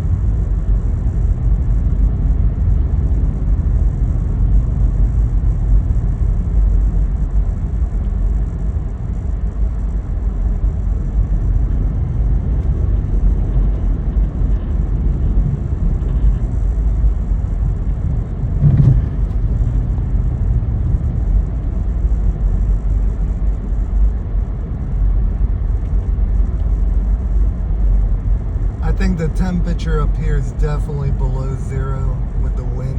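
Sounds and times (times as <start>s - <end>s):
vehicle road and engine rumble: 0.0s - 32.9s
brief loud thump: 18.6s - 19.8s.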